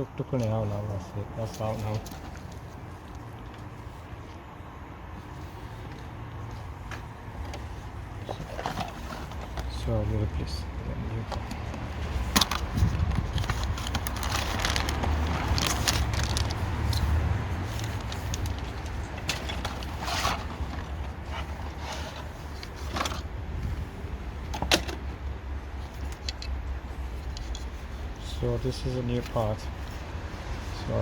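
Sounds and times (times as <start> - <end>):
car parts handled clicking: 11.2 - 17.1, 17.7 - 23.3, 24.4 - 27.9.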